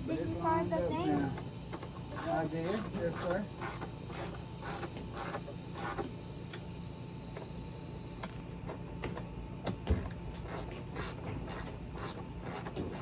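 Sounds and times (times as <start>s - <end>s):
hand tools clicking and creaking: 1.2s - 6.1s, 10.0s - 13.0s.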